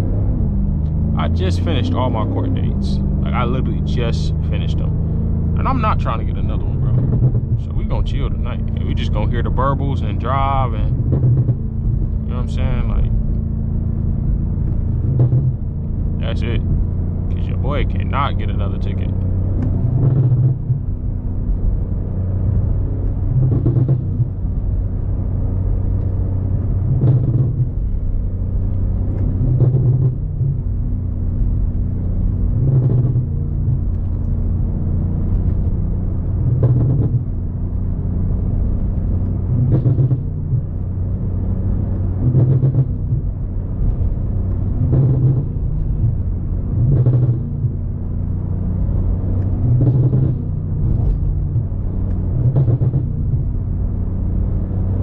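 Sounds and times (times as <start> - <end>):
exhaust burbles: 0.0 - 24.9
car exhaust drone: 0.0 - 55.0.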